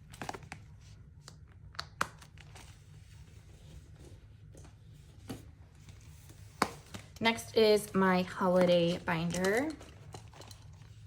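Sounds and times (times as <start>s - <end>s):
paper and plastic rustling: 0.0s - 1.4s, 2.1s - 11.0s.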